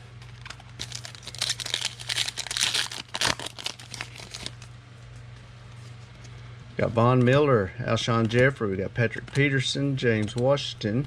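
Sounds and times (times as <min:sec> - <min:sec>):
foil wrapper crinkling and tearing: 0:00.2 - 0:04.7.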